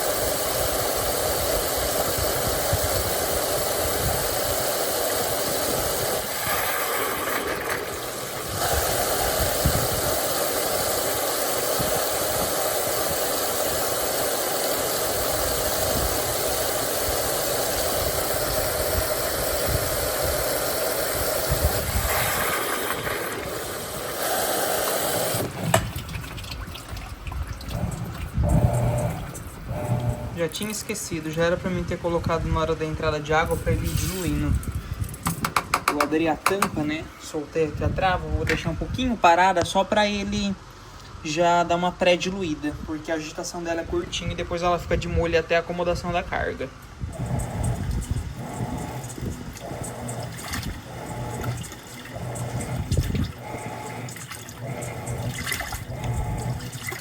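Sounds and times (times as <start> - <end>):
washing machine churning water: 0.0 - 37.0, 46.9 - 57.0
clicks and knocks: 35.2 - 36.8.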